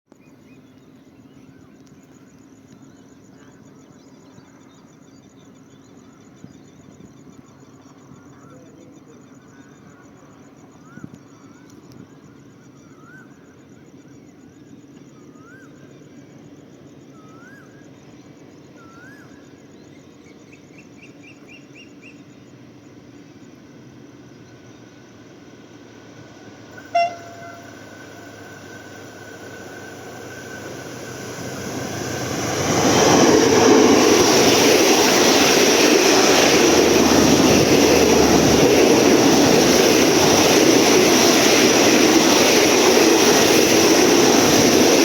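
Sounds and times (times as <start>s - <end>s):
insect pulsing high-pitched: 25.8s - 45.0s
birds chirping: 26.7s - 45.0s.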